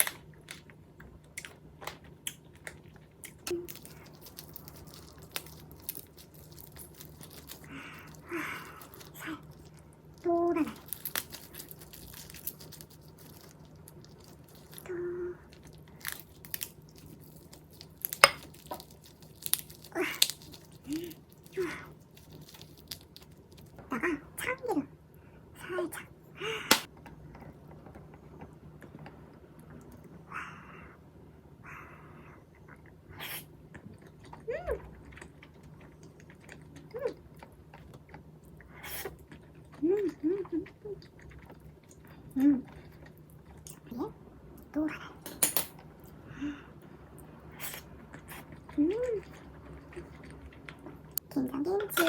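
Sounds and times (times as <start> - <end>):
soft chewing with wet clicks: 0.3 - 23.8, 33.6 - 43.9, 47.1 - 52.0
mouth eating sounds: 32.5 - 44.2.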